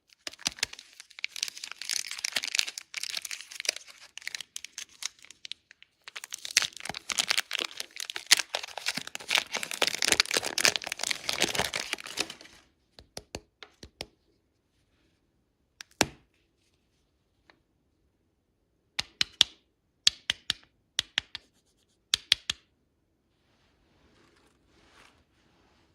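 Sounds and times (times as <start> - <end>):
candy wrapper crinkling and tearing: 0.1 - 12.6
sharp clicks and taps: 19.0 - 21.5, 22.1 - 22.7.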